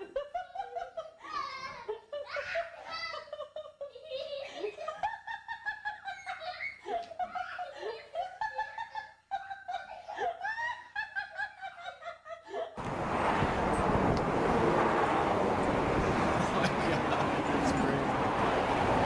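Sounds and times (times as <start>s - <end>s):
high-pitched giggling laughter: 0.0s - 12.8s
wind noise on microphone: 12.8s - 19.0s.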